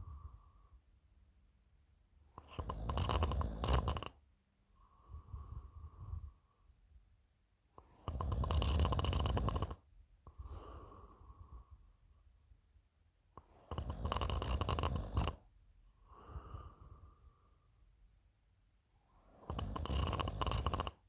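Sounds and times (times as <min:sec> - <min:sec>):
person snoring: 0:02.5 - 0:04.1, 0:08.1 - 0:09.8, 0:13.7 - 0:15.4, 0:19.5 - 0:21.0.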